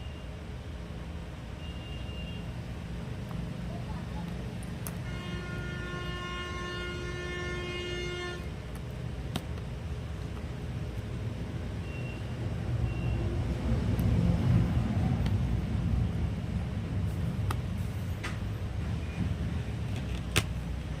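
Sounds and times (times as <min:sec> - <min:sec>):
low traffic rumble: 0:00.0 - 0:21.0
vehicle horn: 0:05.0 - 0:08.6.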